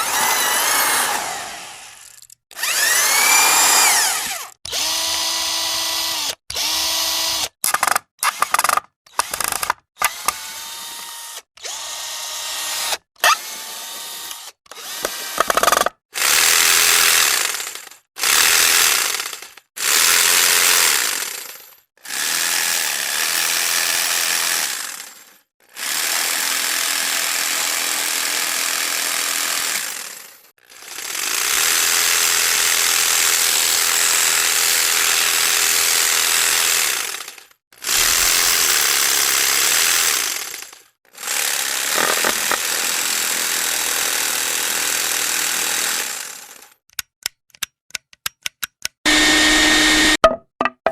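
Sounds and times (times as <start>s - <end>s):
power tools running: 0.0s - 7.4s, 9.2s - 15.9s, 41.4s - 43.4s, 49.1s - 50.2s.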